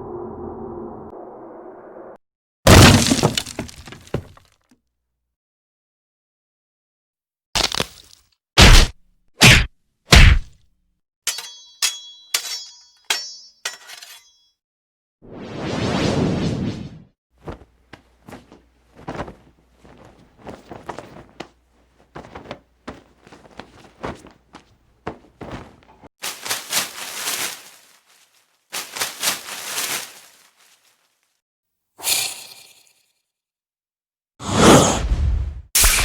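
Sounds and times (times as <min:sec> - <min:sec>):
noisy rushes: 0:00.0 - 0:02.2.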